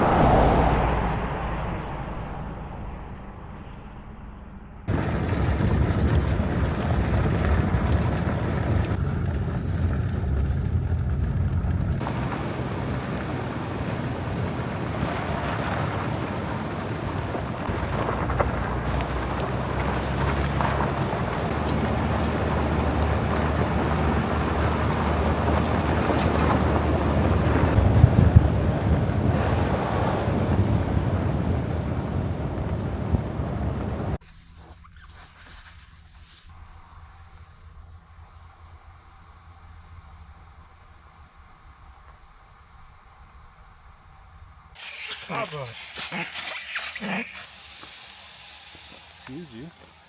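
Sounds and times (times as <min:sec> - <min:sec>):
road and wind noise: 0:00.0 - 0:50.0
vehicle engine hum: 0:00.0 - 0:50.0
vehicle jolt: 0:04.5 - 0:35.1.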